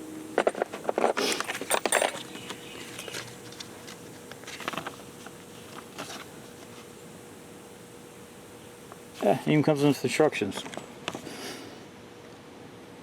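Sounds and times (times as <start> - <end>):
tool handling clicks and rustles: 0.4 - 6.9.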